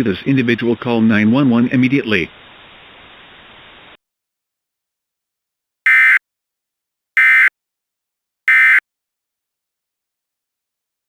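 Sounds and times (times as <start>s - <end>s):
faint hiss: 0.0s - 4.0s.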